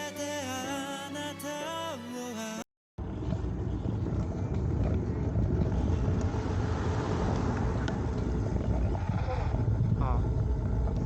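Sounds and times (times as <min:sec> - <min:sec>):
traffic rumble: 0:03.0 - 0:11.0
wind on microphone: 0:03.0 - 0:11.0.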